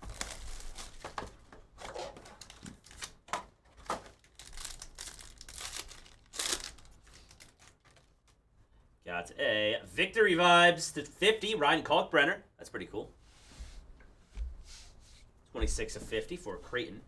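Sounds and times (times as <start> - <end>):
plastic wrapping crinkling and tearing: 0.0 - 8.4.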